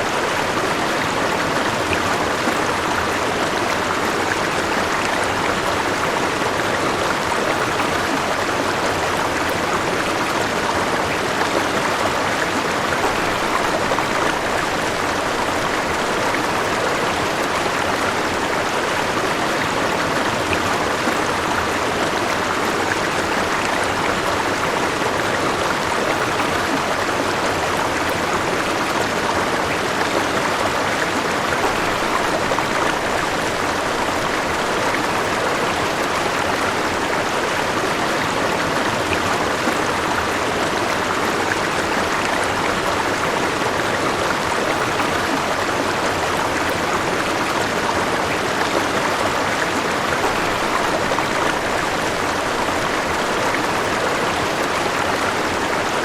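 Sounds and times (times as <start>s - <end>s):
river water rushing over rocks: 0.0s - 56.0s.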